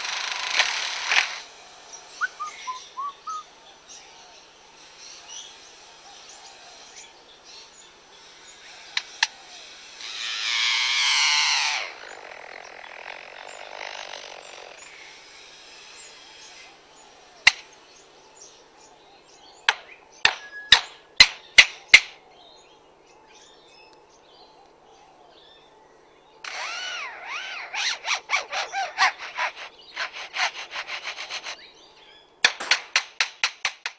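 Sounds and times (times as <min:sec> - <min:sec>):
looping whistles: 0:02.1 - 0:03.5
sawing-like rasp: 0:26.5 - 0:31.7
rapid tool-like taps: 0:32.4 - 0:33.9
sharp knocks: 0:32.4 - 0:33.9.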